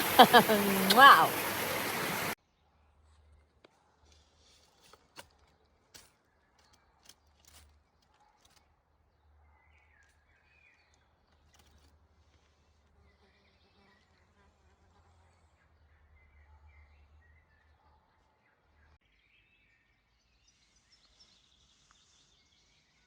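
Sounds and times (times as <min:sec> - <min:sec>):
rushing stream water: 0:00.0 - 0:02.4.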